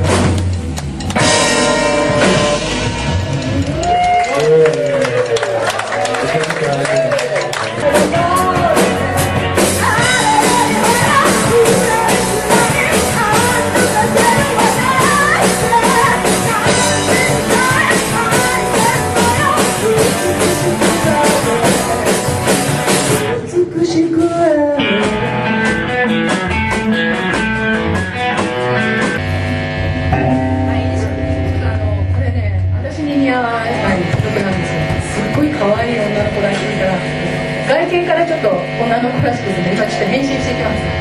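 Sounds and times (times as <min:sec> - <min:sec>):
drums: 0:00.0 - 0:41.0
electric guitar: 0:00.0 - 0:41.0
person singing: 0:07.7 - 0:22.6.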